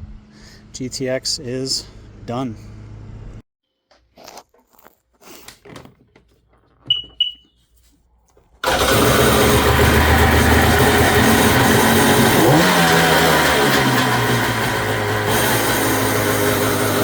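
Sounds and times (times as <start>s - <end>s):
short high beeps: 6.9s - 7.6s
two-stroke watercraft engine running: 8.6s - 17.0s.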